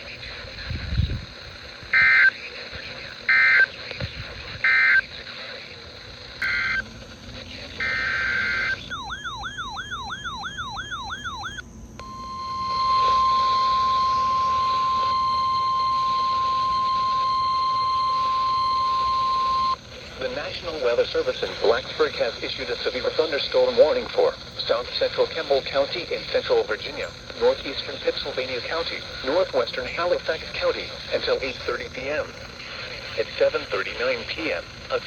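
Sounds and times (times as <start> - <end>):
digital data squawk: 6.4 - 6.8, 7.8 - 19.8
steady single-pitch alert tone: 7.8 - 19.8.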